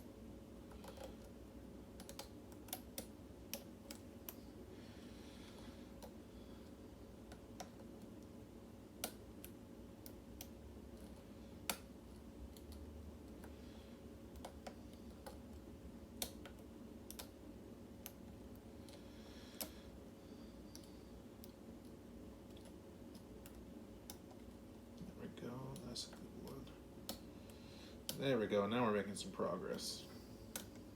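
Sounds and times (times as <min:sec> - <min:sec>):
faint steady hum: 0:00.0 - 0:30.9.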